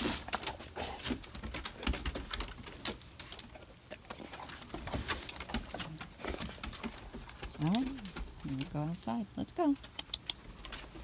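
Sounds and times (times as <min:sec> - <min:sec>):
dog tags jingling: 0:01.2 - 0:03.8, 0:05.1 - 0:09.1.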